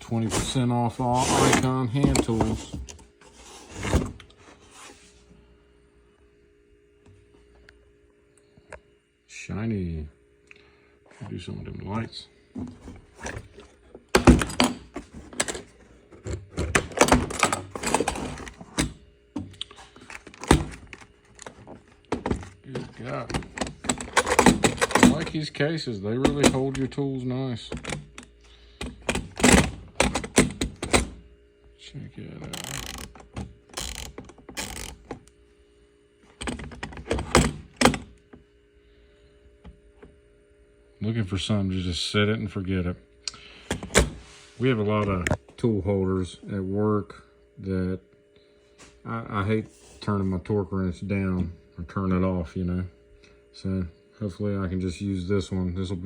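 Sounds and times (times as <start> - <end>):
plastic case scraping: 0.0 - 4.9, 12.6 - 18.8
rustling and scraping: 0.0 - 5.3.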